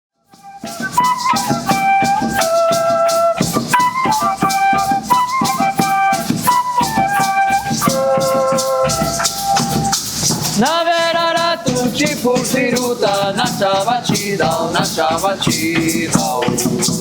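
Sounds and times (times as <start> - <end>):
shaken maracas: 0.2 - 17.0
flute melody: 0.3 - 10.6
low drum: 0.4 - 17.0.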